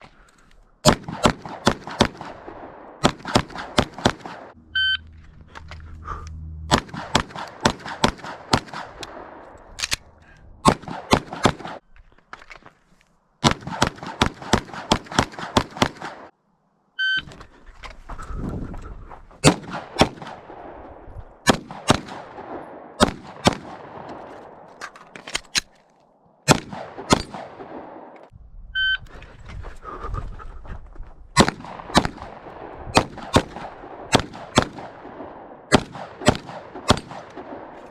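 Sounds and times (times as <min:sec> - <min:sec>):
pistol shots with echo: 0:00.8 - 0:04.6, 0:06.7 - 0:09.4, 0:10.6 - 0:11.8, 0:13.4 - 0:16.3, 0:19.4 - 0:20.8, 0:21.4 - 0:24.2, 0:26.5 - 0:28.1, 0:31.4 - 0:37.8.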